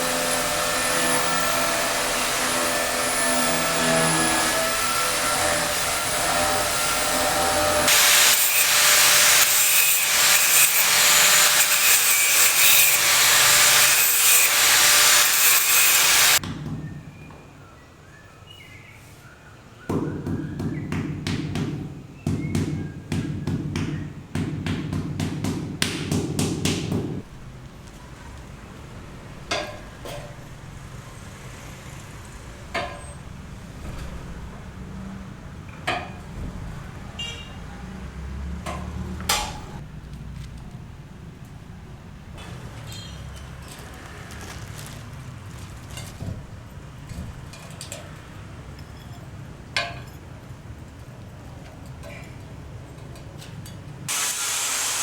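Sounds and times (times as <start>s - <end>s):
power tool running: 0.0s - 16.4s, 54.1s - 55.0s.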